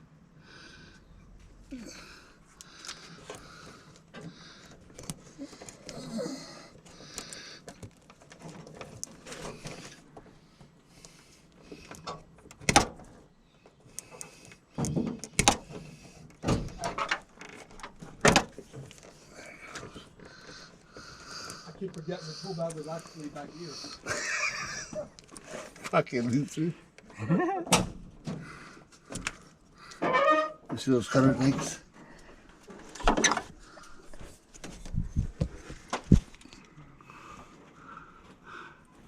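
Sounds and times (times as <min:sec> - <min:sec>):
rustling and shuffling: 0:02.5 - 0:27.0, 0:30.7 - 0:39.0.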